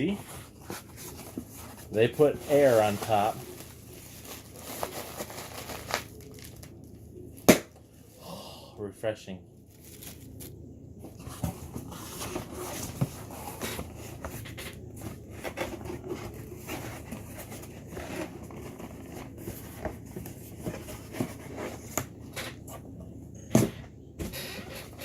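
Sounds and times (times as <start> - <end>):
cardboard box rummaged by hand: 0.0 - 6.0
plastic air pillows crinkling: 0.0 - 6.8, 9.7 - 10.6.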